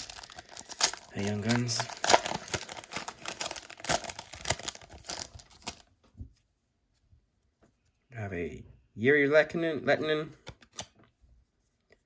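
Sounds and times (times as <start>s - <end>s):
card pack wrapper tearing: 0.0s - 5.9s.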